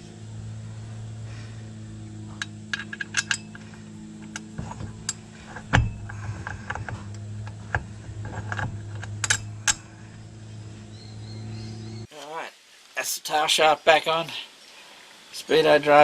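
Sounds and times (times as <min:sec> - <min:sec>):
steady low hum: 0:00.0 - 0:12.1
metallic clinks of tools: 0:02.3 - 0:07.5.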